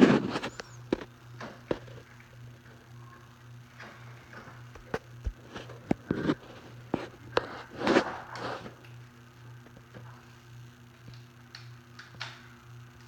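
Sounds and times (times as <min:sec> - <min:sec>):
scraping rustle: 0:00.0 - 0:00.9, 0:04.0 - 0:08.8
low steady hum: 0:00.0 - 0:13.0.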